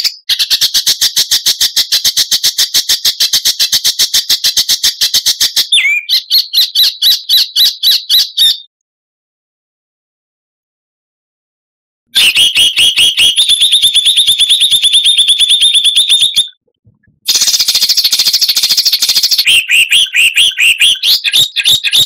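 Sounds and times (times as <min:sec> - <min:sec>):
songbird chattering song: 0:03.1 - 0:08.7, 0:12.3 - 0:22.0.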